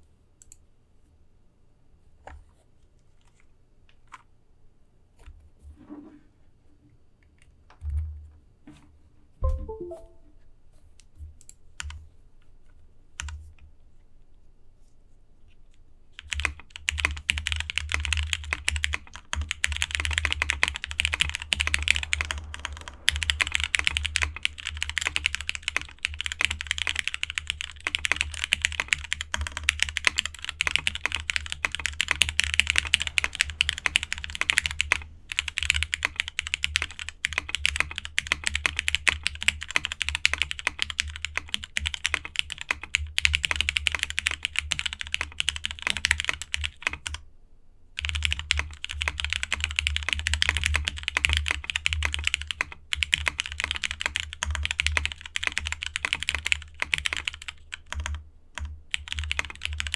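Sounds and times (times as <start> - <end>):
mechanical keyboard typing: 16.2 - 47.2, 48.0 - 59.9.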